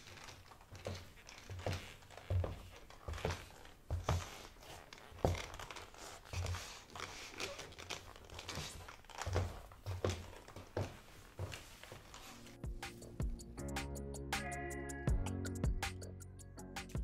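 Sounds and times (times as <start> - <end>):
boot footsteps on hard floor: 0.0 - 13.2.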